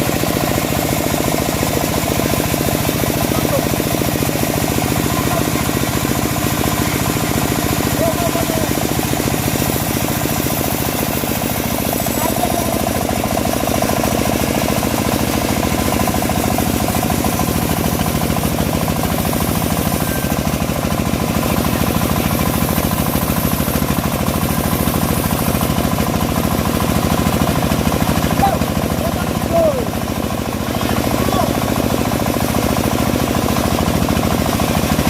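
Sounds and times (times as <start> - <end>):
saw cutting log: 0.0 - 35.0
sawmill engine running: 0.0 - 35.0.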